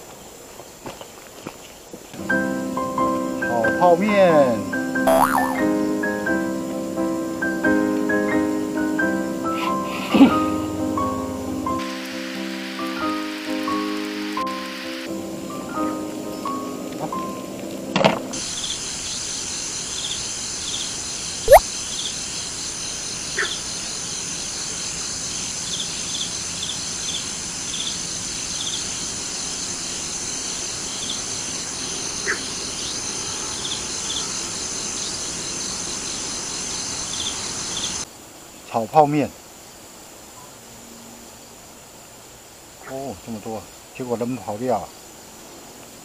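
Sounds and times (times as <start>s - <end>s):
insect chirps: 5.1s - 6.6s, 18.4s - 46.0s
insect drone: 5.1s - 17.3s, 18.4s - 46.0s.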